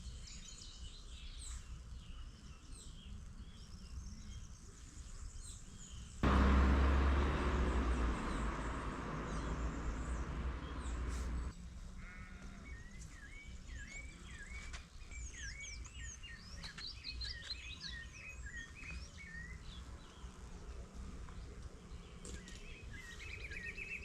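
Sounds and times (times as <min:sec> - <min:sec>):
small birds chirping: 0:00.4 - 0:11.5
low rumble: 0:06.2 - 0:11.5.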